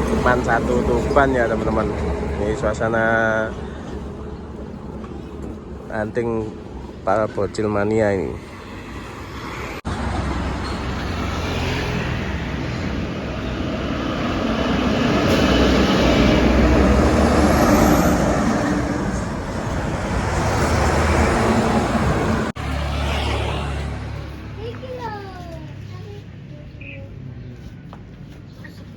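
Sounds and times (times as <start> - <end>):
road traffic passing: 0.0 - 28.9
heavy vehicle engine rumble: 9.8 - 27.6.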